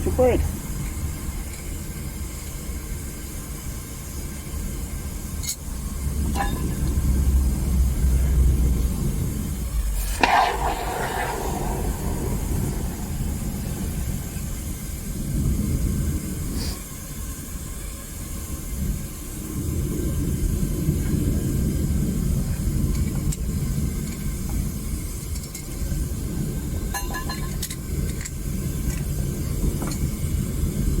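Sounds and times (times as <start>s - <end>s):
burner rumbling and hissing: 0.0s - 26.9s
metallic clank: 9.9s - 15.0s.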